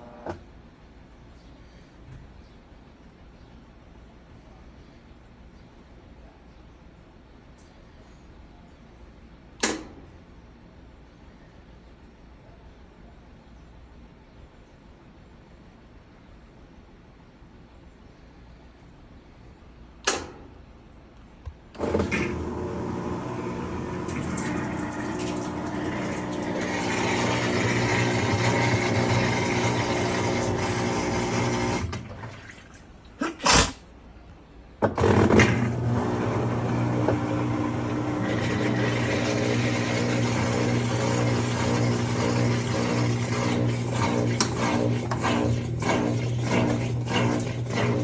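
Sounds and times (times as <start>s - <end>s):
washing machine humming: 0.0s - 0.4s, 21.8s - 33.3s, 34.8s - 48.0s.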